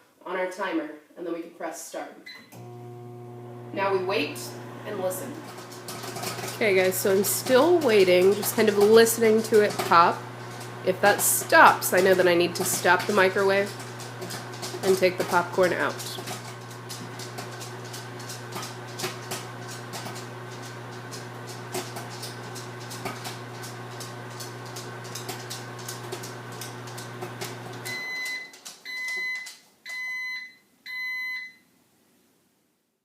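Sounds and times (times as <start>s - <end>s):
microwave oven humming: 2.6s - 28.3s
popcorn popping: 5.3s - 28.7s
microwave high beeps: 27.8s - 31.6s.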